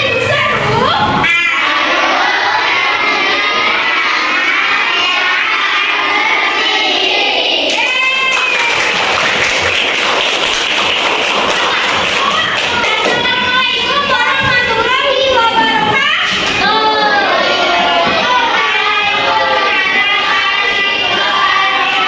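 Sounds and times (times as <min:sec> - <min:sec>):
children shouting and cheering: 0:00.3 - 0:22.0
children singing: 0:01.2 - 0:08.2, 0:16.3 - 0:22.0.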